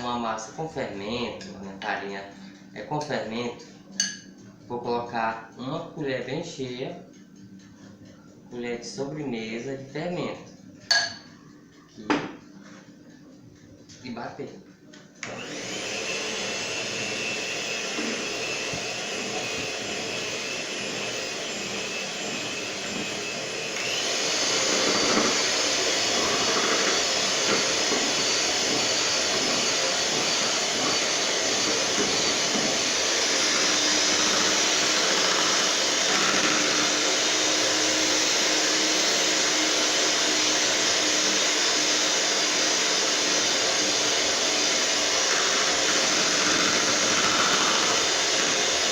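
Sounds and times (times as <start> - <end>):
electric mixer motor whining: 15.2 - 48.9.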